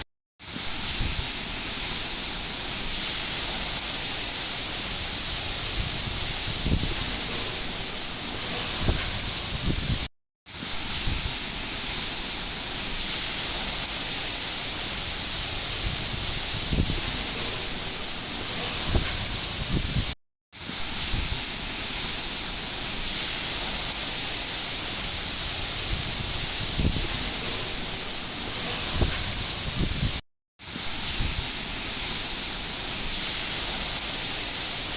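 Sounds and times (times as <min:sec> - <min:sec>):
heavy rain hissing: 0:00.5 - 0:34.9.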